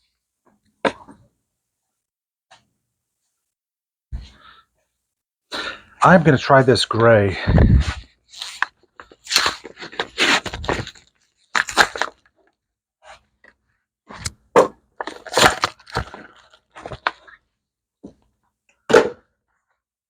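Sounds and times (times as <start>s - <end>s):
plastic packaging crackling and tearing: 8.3s - 12.3s, 15.0s - 17.3s.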